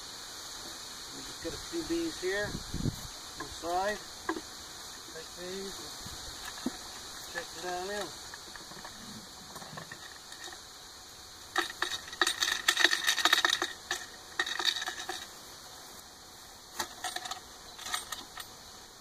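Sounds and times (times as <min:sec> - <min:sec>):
wooden frames clattering: 0:08.0 - 0:10.6, 0:16.7 - 0:18.5.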